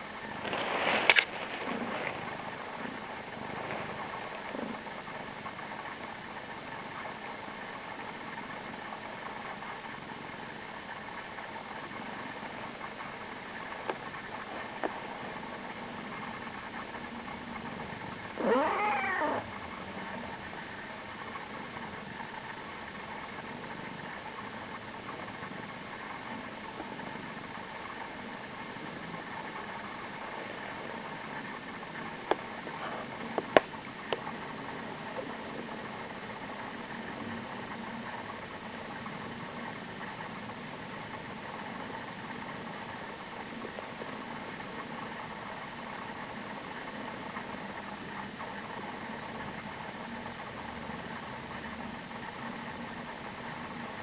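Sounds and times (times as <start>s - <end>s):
steady background hum: 0.0s - 54.0s
pet squeak: 18.4s - 19.4s.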